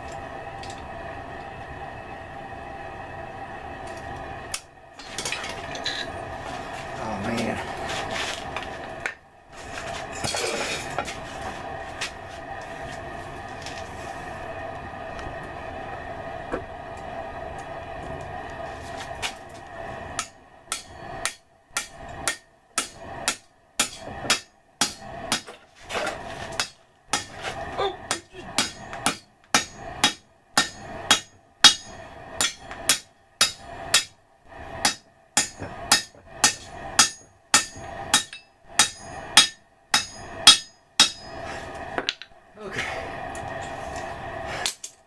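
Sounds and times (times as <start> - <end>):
hammer striking steel on anvil: 20.2 - 25.5, 26.6 - 27.4, 28.1 - 34.1, 34.8 - 41.4.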